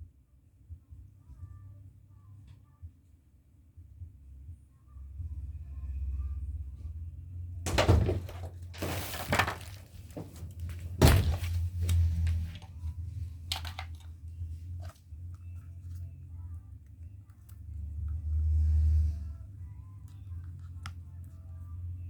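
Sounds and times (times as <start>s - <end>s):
hard objects clattering: 7.7s - 12.7s, 13.5s - 14.2s.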